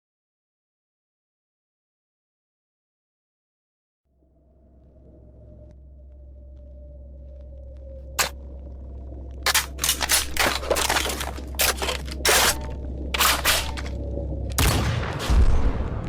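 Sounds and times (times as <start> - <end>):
low steady hum: 4.1 - 14.9
gunshots: 9.5 - 14.0
explosion boom: 14.6 - 16.0.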